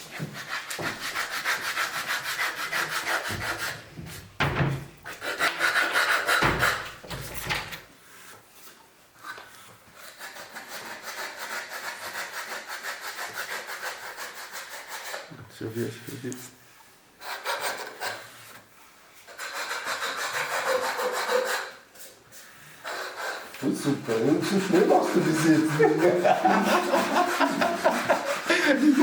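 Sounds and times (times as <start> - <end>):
fast scraping strokes: 9.6 - 16.3, 19.2 - 29.0.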